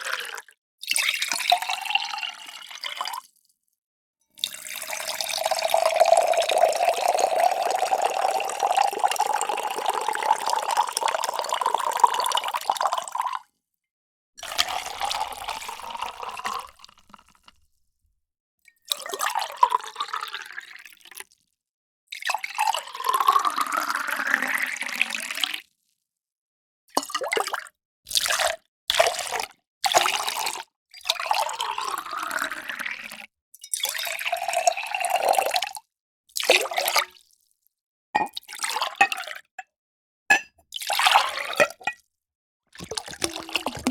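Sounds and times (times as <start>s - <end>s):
water pouring: 4.4s - 13.3s, 14.4s - 17.6s, 42.8s - 43.9s
water dripping: 42.8s - 43.9s.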